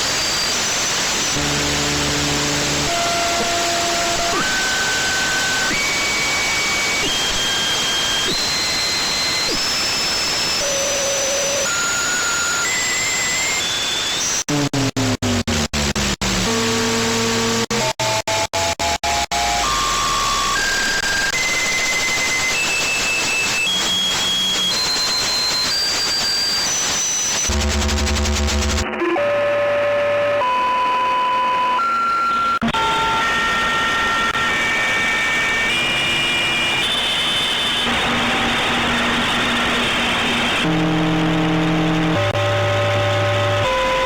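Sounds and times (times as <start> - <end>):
radio static hiss: 0.0 - 14.4, 32.6 - 44.0.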